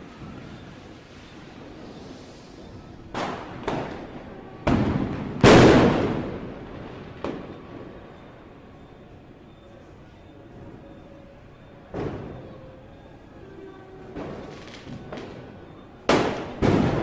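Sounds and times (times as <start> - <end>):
firecrackers exploding: 0.0 - 8.5, 11.9 - 12.6, 14.0 - 17.0
rolling echo: 0.0 - 17.0.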